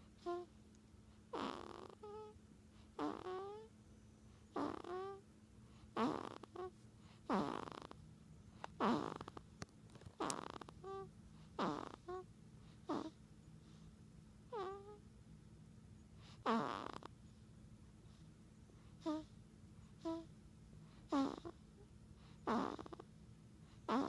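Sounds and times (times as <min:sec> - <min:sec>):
pet snoring: 0:00.2 - 0:00.5, 0:01.3 - 0:02.3, 0:03.0 - 0:03.7, 0:04.5 - 0:05.2, 0:05.9 - 0:08.0, 0:08.7 - 0:09.4, 0:10.2 - 0:13.2, 0:14.5 - 0:15.0, 0:16.3 - 0:17.1, 0:19.0 - 0:19.3, 0:20.0 - 0:20.3, 0:21.1 - 0:21.6, 0:22.4 - 0:23.0, 0:23.8 - 0:24.0.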